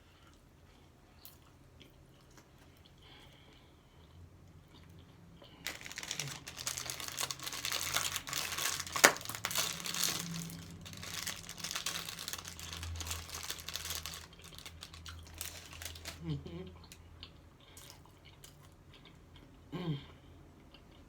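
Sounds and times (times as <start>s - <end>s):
food wrapper crinkling: 5.6s - 16.3s.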